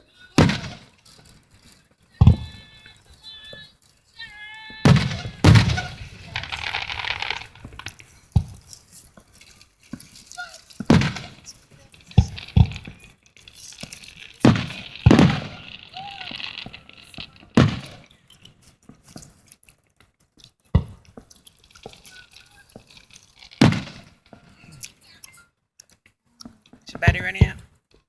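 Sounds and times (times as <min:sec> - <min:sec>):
firework crackling pops: 0:00.0 - 0:25.4, 0:26.4 - 0:27.7
firework booms echoing: 0:00.4 - 0:01.0, 0:02.2 - 0:02.7, 0:04.8 - 0:08.7, 0:10.7 - 0:13.1, 0:13.9 - 0:18.1, 0:23.6 - 0:24.2.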